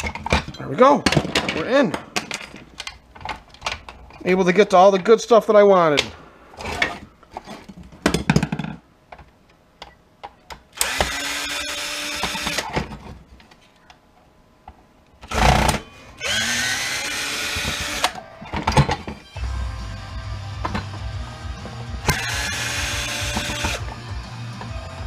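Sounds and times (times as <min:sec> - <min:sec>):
clicks and clatter of parts: 0:00.0 - 0:04.2
power drill running: 0:10.8 - 0:12.8, 0:15.3 - 0:18.2, 0:22.0 - 0:23.9.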